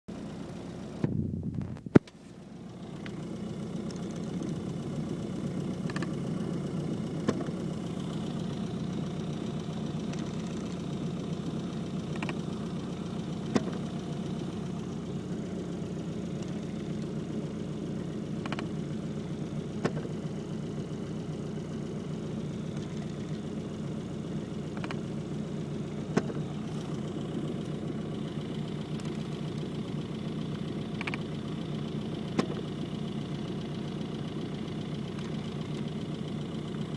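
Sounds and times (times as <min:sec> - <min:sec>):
car engine idling: 0:00.1 - 0:36.9
sharp clicks in pairs: 0:18.4 - 0:18.7, 0:31.0 - 0:31.3.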